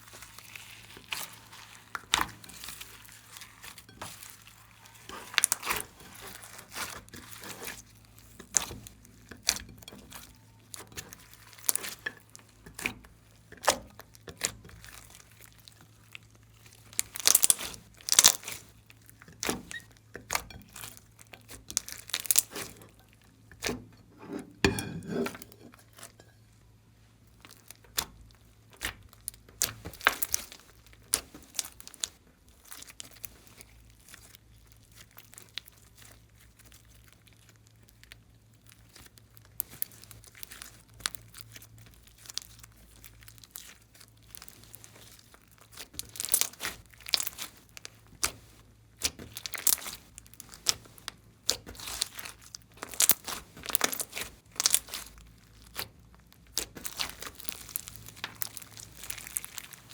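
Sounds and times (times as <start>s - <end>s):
slime sticky pops and crackles: 16.9s - 18.6s, 21.4s - 22.7s, 27.5s - 33.3s, 37.8s - 59.9s.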